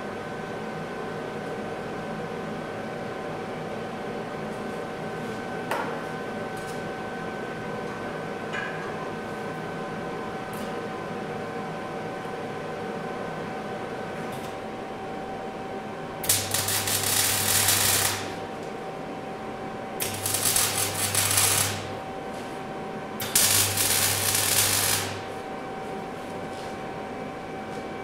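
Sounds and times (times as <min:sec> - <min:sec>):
welding arc crackling: 0:16.2 - 0:18.5, 0:20.0 - 0:22.0, 0:23.2 - 0:25.3.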